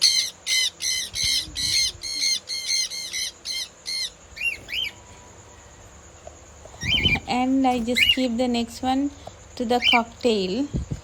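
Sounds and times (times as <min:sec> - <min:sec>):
parrot squawking: 0:00.0 - 0:05.0.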